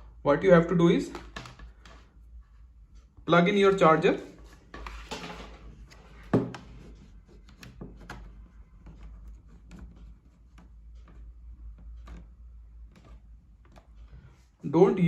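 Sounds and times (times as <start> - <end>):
charger cable clicking and rubbing: 5.8 - 14.6.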